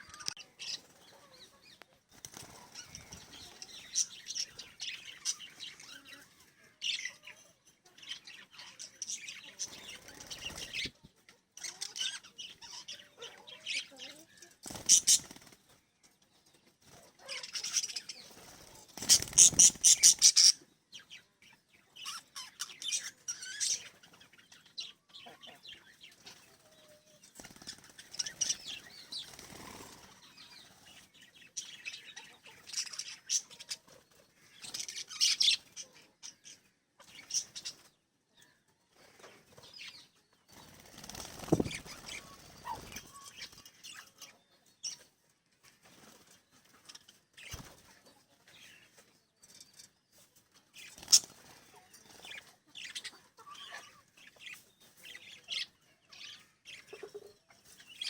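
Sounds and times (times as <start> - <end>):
wings fluttering: 2.1 - 6.0, 9.6 - 11.0, 14.5 - 15.8, 16.8 - 20.6, 26.2 - 31.1, 40.5 - 44.0, 45.6 - 48.0, 50.8 - 52.5
parrots chirping: 19.1 - 20.6.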